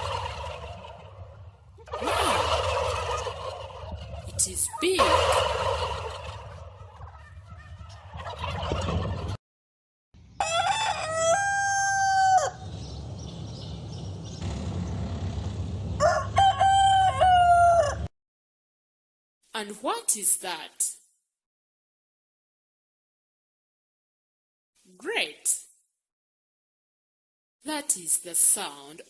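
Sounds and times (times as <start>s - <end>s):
rooster crowing: 10.4s - 12.7s, 16.0s - 18.1s.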